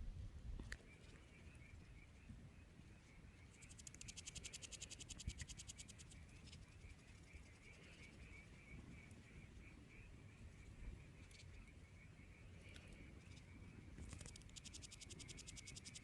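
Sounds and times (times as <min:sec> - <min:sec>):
high-pitched trill of clicks: 0:03.6 - 0:06.6, 0:14.1 - 0:16.0.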